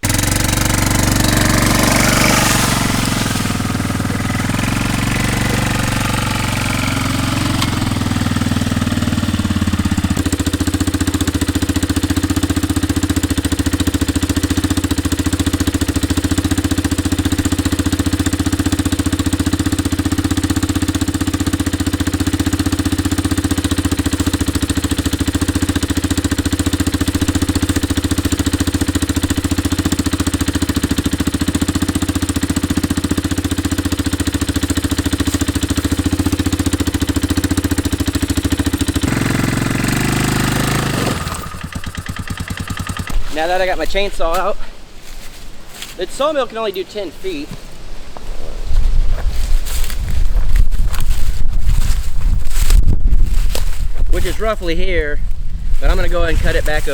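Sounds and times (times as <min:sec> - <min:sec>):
engine idling: 0:00.0 - 0:45.4.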